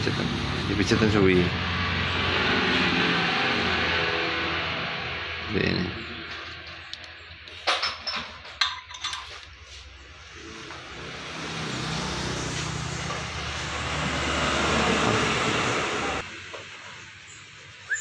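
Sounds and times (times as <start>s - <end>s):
metal parts clinking: 6.4s - 9.6s.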